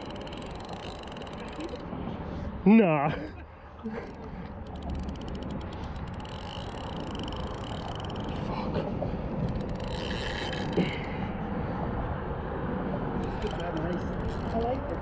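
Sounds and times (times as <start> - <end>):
fine ticks: 0.0 - 1.8, 3.9 - 8.5, 9.4 - 11.1, 13.2 - 15.0
road traffic rumble on bridge: 0.0 - 15.0.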